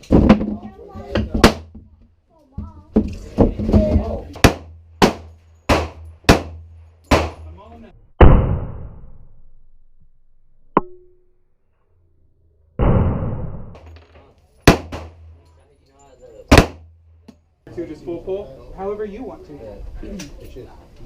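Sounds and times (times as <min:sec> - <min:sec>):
gunshots: 0:04.4 - 0:07.4, 0:08.2 - 0:09.1, 0:12.8 - 0:13.8, 0:14.6 - 0:15.3, 0:16.5 - 0:16.9.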